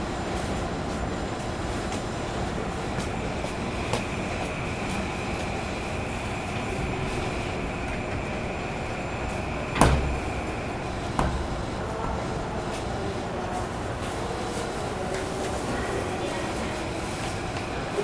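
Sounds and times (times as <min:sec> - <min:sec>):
train equipment hum: 0:00.0 - 0:18.0
sharp clunk: 0:09.7 - 0:12.9
small knock: 0:09.8 - 0:12.8.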